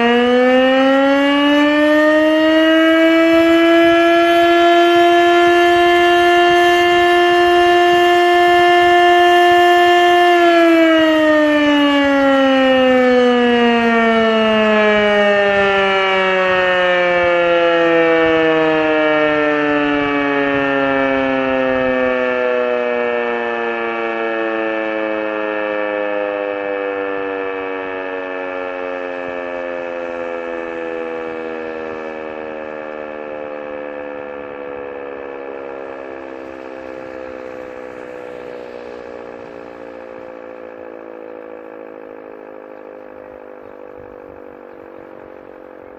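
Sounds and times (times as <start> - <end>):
fire siren wail falling in pitch: 0.0 - 45.9.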